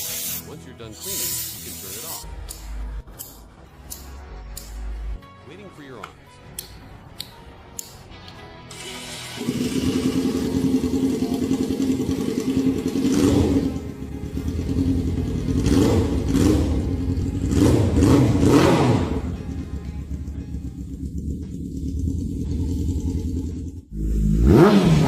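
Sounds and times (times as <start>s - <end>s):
motorcycle engine revving: 9.3s - 25.0s.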